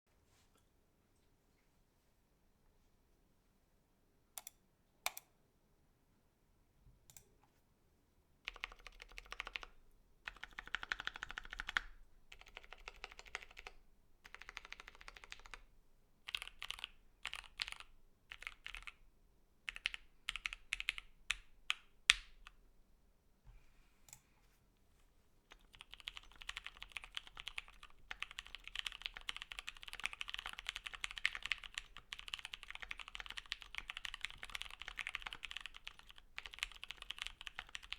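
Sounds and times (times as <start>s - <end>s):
mechanical keyboard typing: 8.5s - 15.6s, 16.3s - 19.0s, 19.7s - 22.5s, 25.5s - 37.9s.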